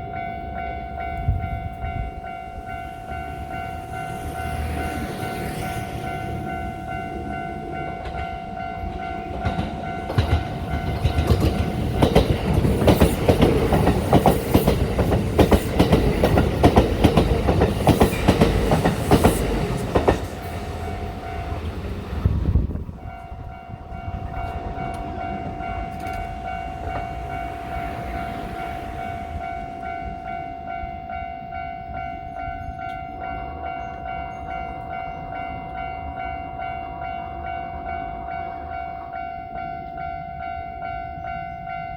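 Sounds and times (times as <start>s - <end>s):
train wheels clacking on rails: 2.4s - 39.2s.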